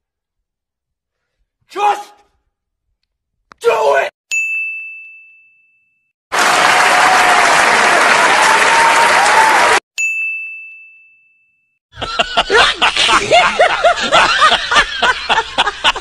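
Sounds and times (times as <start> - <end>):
bell-like ding: 4.3 - 6.1, 10.0 - 11.8
crowd applause: 6.3 - 9.8.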